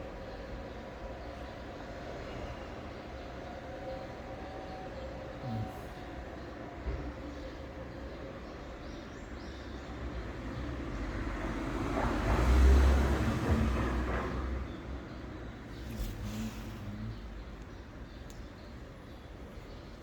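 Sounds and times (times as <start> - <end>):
vehicle passing by: 10.6 - 17.6.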